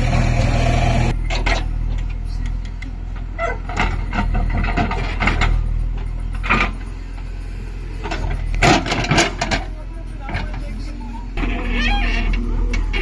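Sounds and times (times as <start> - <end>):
diesel machinery running: 0.0 - 13.0
metal clanks and scrapes: 3.2 - 7.3, 7.9 - 10.8, 11.4 - 13.0.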